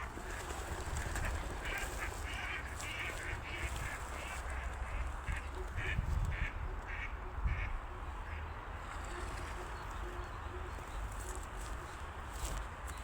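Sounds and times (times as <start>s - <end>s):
ducks quacking: 0.0s - 11.3s.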